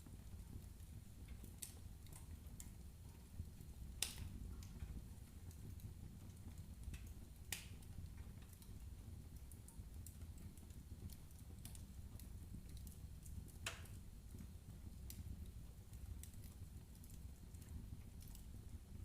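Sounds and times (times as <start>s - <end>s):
firewood crackling: 0.2s - 19.0s
sharp fire pops: 4.0s - 4.3s.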